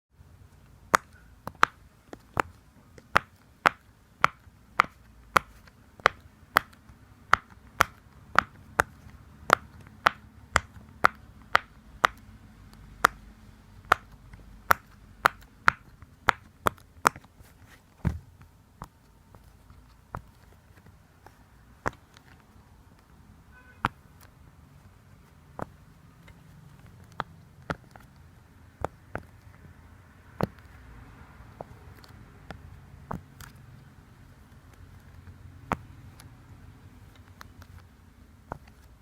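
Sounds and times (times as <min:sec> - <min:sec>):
taps on silicone fidget toy: 0:00.8 - 0:17.3, 0:25.6 - 0:28.2, 0:34.5 - 0:36.3, 0:38.5 - 0:39.0.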